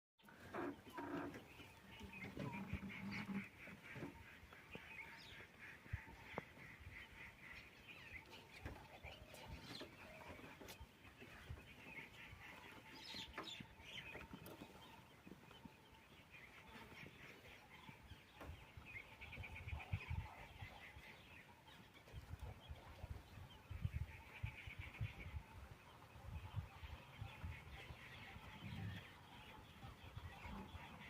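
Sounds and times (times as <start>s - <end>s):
low fowl-like calls: 0.2s - 7.5s
wild birds calling: 0.2s - 31.0s.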